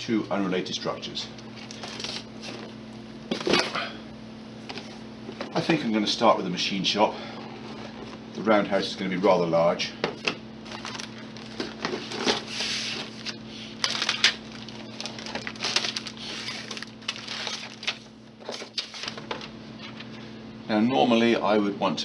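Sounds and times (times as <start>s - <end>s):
steady low hum: 0.0s - 22.0s
plastic box rustling: 10.6s - 19.5s.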